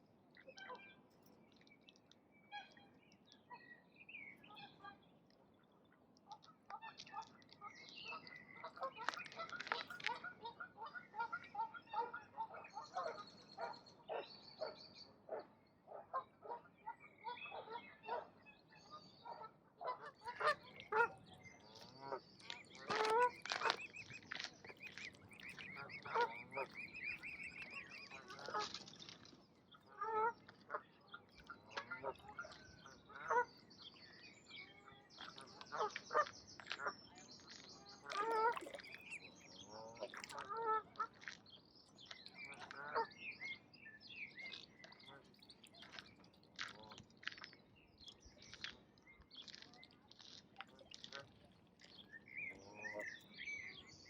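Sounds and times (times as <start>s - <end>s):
small birds chirping: 0.4s - 54.0s
ducks calling: 6.3s - 14.8s, 19.2s - 33.9s, 35.2s - 41.4s, 44.4s - 47.5s.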